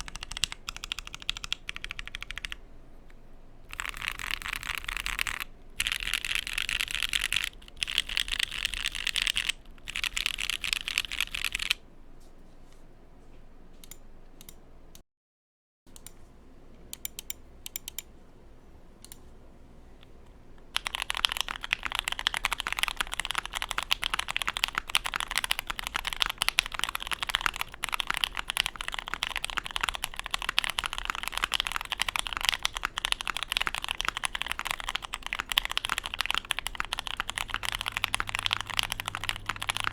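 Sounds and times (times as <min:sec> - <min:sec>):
mechanical keyboard typing: 0:00.0 - 0:02.6, 0:03.7 - 0:11.8, 0:17.0 - 0:18.1, 0:20.7 - 0:39.9.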